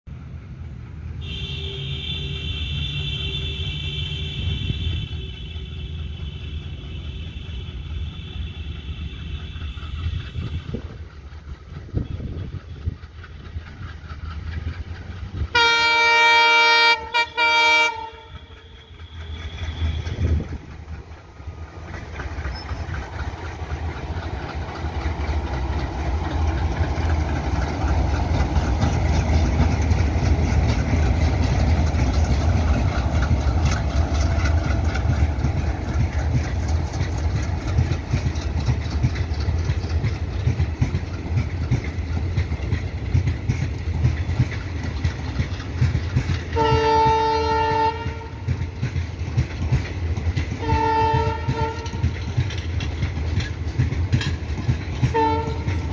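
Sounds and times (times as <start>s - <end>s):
diesel locomotives chugging: 0.0s - 55.9s
locomotive horn blast: 1.2s - 9.4s, 15.5s - 20.4s, 46.5s - 48.5s, 50.6s - 52.1s, 55.0s - 55.9s.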